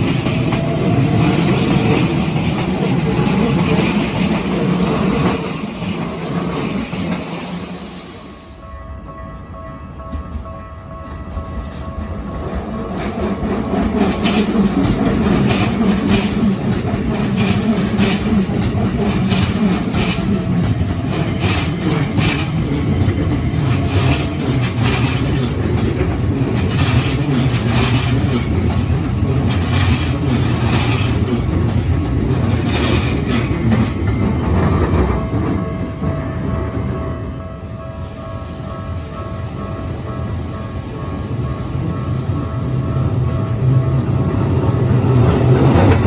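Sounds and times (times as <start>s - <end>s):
wheels clacking over rail joints: 0.0s - 7.6s, 11.6s - 37.0s, 43.2s - 46.0s
train rumble: 0.0s - 46.0s.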